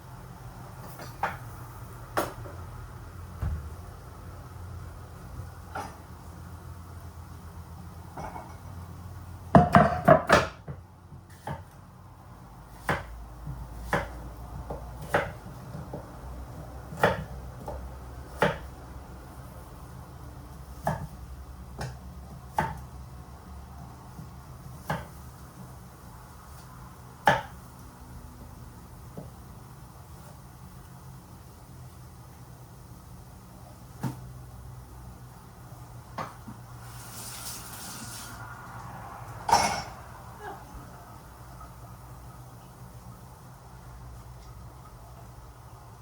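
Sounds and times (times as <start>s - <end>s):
knife chopping on wooden board: 12.8s - 16.0s, 16.9s - 17.8s, 18.4s - 18.7s, 20.8s - 21.2s, 21.8s - 22.8s, 24.2s - 25.2s, 27.2s - 27.6s.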